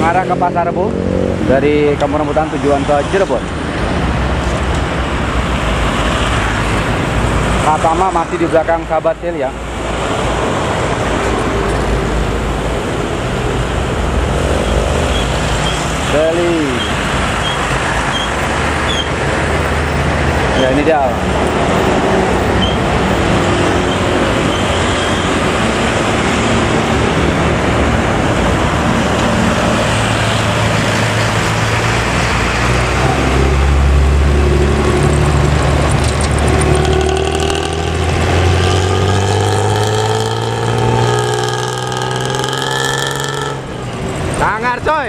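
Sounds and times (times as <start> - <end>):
heavy traffic noise: 0.0 - 45.0
bus exhaust deep growl: 10.0 - 44.4.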